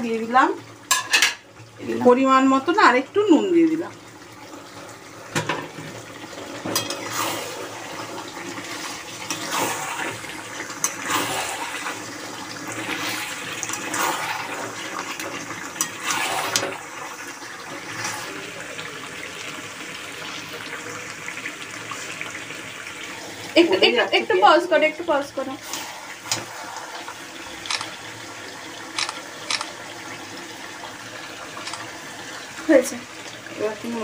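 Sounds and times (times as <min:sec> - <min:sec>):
curry sizzling and bubbling: 0:00.0 - 0:34.0
spatula scraping a pan: 0:08.7 - 0:12.0.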